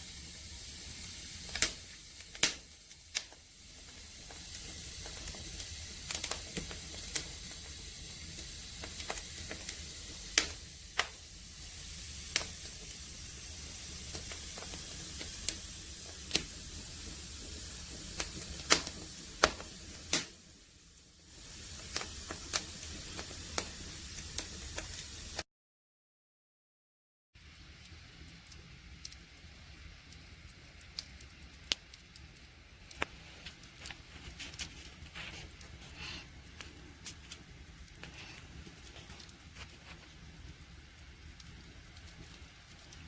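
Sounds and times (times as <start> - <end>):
wood fire hissing: 0.0 - 25.5, 27.4 - 43.0
firewood popping and snapping: 0.9 - 20.4, 21.6 - 25.4, 30.6 - 40.6.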